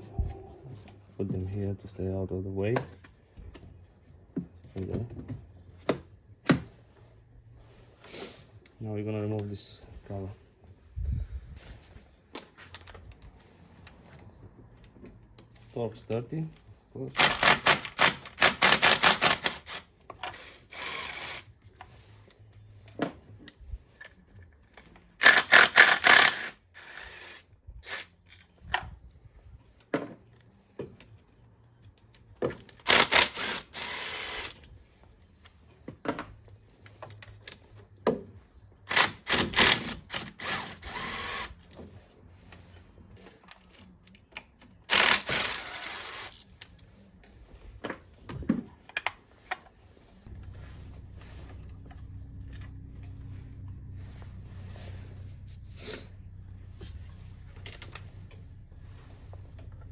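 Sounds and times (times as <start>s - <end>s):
ratchet clicking rapidly: 17.2s - 19.8s, 32.9s - 34.6s, 44.9s - 46.4s.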